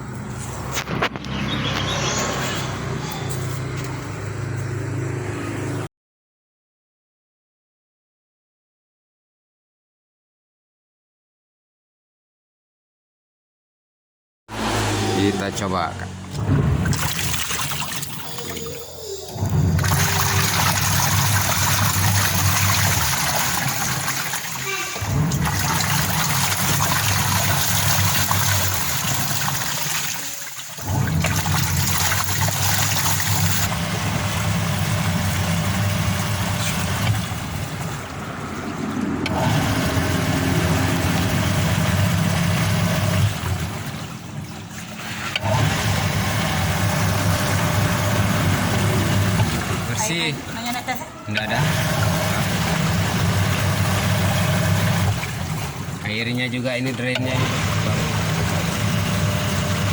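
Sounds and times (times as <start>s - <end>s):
washing machine motor humming: 16.3s - 59.9s
water churning: 16.3s - 59.9s.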